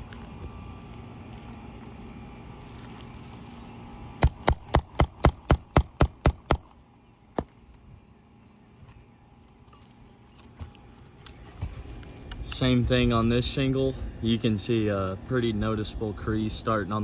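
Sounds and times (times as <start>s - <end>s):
hammer blows ringing on metal: 4.2s - 6.7s.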